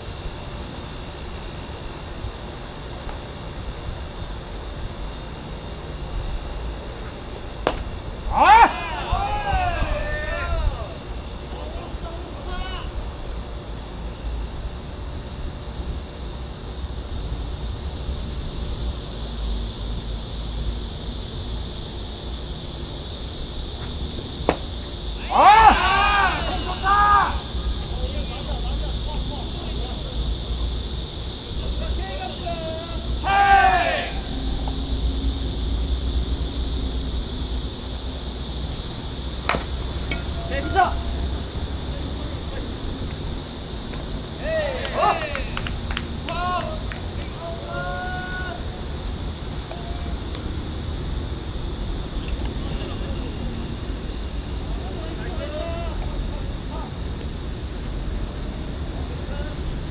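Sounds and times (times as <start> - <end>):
insects chirping: 0.0 - 59.9
steady high hiss: 0.0 - 59.9
sharp knock: 7.7 - 8.0, 24.5 - 24.8, 39.5 - 40.3
brief shout: 25.2 - 27.4, 33.2 - 34.3.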